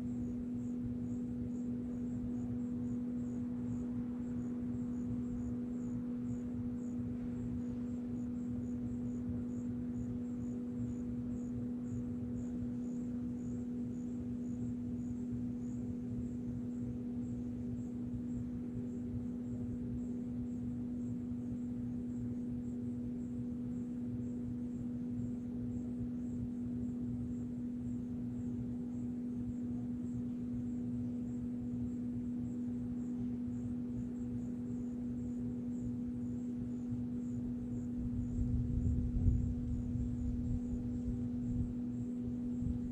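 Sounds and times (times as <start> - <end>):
faint high pulsing: 0.0 - 42.9
steady low hum: 0.0 - 42.9.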